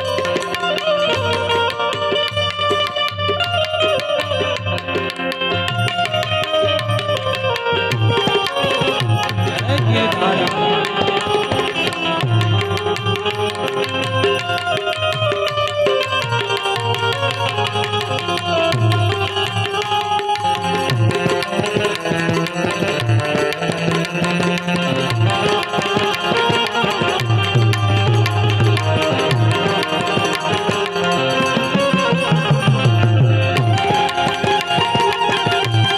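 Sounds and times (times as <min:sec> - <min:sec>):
sustained melodic line: 0:00.0 - 0:15.4
hand drum rhythm: 0:00.0 - 0:35.9.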